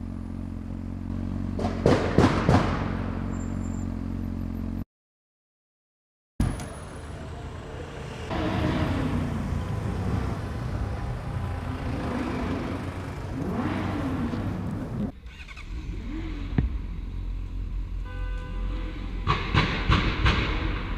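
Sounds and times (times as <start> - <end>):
vehicle engine revving: 8.2 - 17.9.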